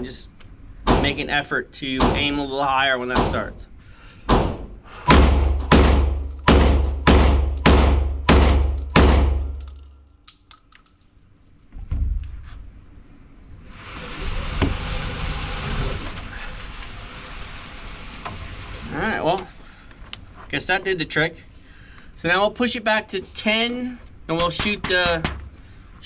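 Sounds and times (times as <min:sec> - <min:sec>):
thud: 0:04.3 - 0:09.6, 0:11.8 - 0:12.6
shotgun shots: 0:04.4 - 0:09.6.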